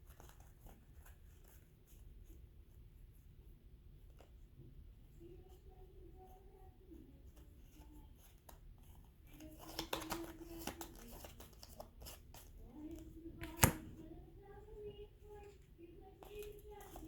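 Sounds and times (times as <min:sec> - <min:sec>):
cards being handled: 0:00.0 - 0:02.3, 0:07.3 - 0:17.0
sharp snap: 0:13.4 - 0:14.0.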